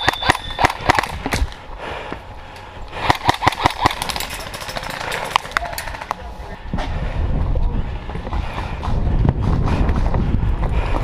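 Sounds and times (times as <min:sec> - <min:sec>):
airsoft guns firing: 0:00.0 - 0:01.4, 0:03.0 - 0:06.3.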